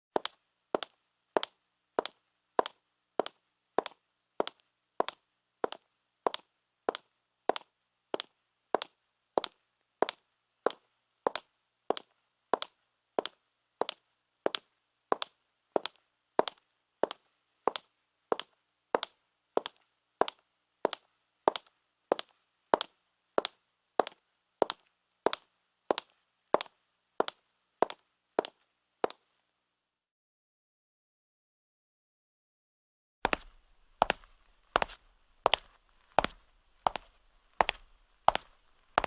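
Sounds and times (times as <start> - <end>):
footsteps on marble floor: 33.2 - 39.0.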